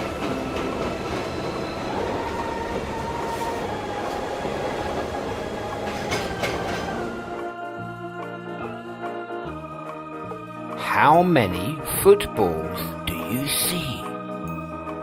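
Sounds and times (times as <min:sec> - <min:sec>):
train rumbling on rails: 0:00.0 - 0:07.5
organ-like music: 0:06.7 - 0:15.0.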